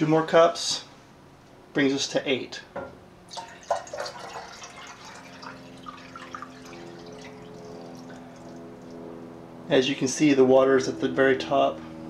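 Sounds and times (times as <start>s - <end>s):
water pouring into kettle: 3.3s - 9.0s.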